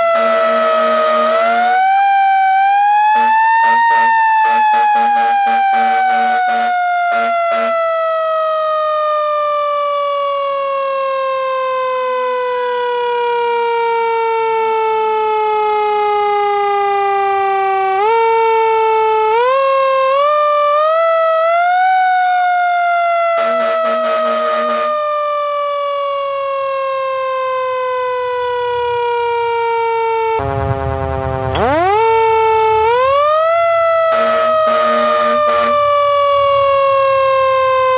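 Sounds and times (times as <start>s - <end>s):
air horn blasts: 0.0s - 2.0s, 3.0s - 8.1s, 23.3s - 25.1s, 30.4s - 36.2s
siren wailing: 0.0s - 37.9s.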